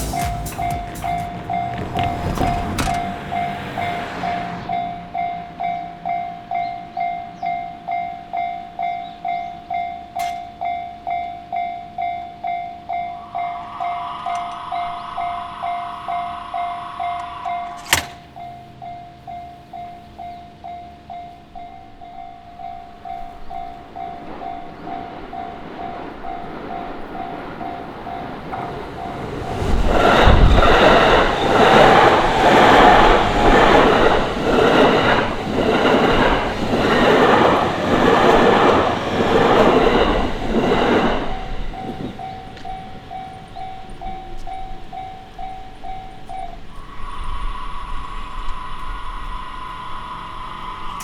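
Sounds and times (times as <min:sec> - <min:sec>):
train wheels clattering over rail joints: 0:00.0 - 0:04.3, 0:26.7 - 0:42.8
level crossing warning bell: 0:00.0 - 0:46.8.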